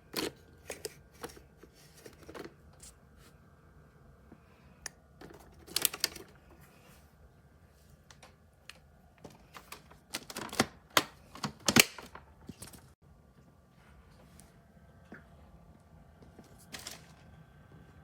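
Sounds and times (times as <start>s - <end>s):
faint steady hum: 0.0s - 18.0s
clicks and scrapes of objects: 0.1s - 3.0s.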